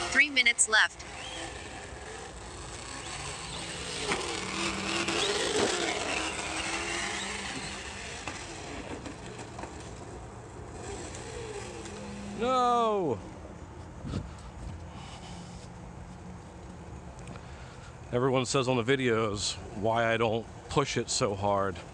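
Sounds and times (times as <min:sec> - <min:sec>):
recorded engine through speaker: 0:00.0 - 0:14.3.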